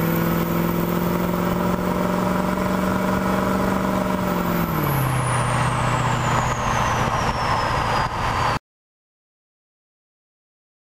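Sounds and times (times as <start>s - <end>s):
diesel engine revving: 0.0s - 8.6s.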